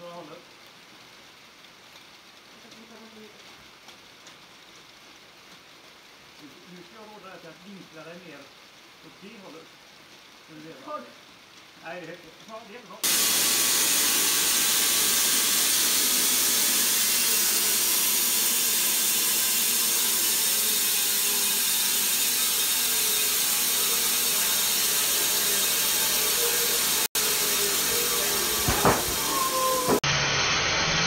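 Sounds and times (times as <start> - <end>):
band sawmill sawing a log: 13.0 - 30.0.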